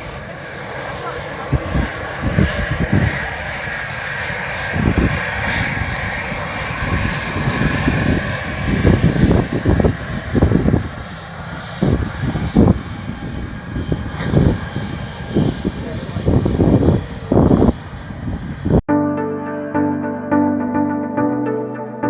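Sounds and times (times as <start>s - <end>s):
jet engines running: 0.0s - 18.8s.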